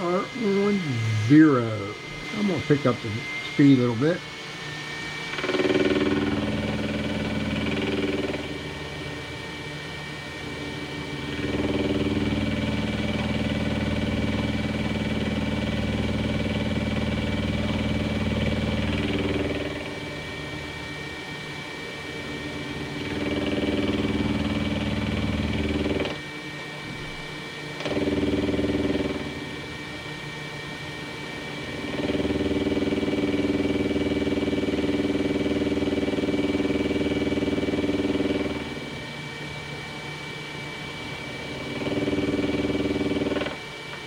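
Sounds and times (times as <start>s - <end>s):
pitched cutting drone: 0.0s - 13.0s
milling machine whine: 0.0s - 44.0s.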